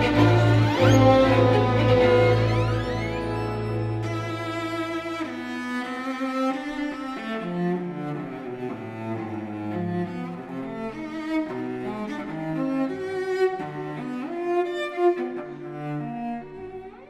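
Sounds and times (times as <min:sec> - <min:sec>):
low strings: 0:00.0 - 0:05.5
cello melody: 0:00.0 - 0:17.0.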